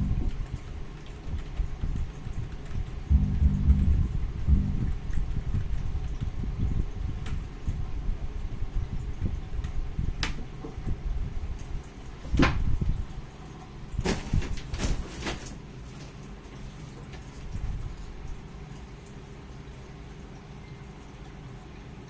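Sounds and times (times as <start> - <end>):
low rumble: 0.0 - 0.4, 3.1 - 5.7.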